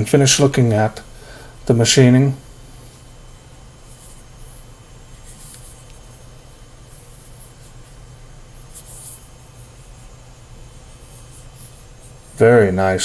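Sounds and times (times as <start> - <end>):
steady low hum: 0.0 - 13.0
fingers rustling on flashlight: 2.7 - 12.4.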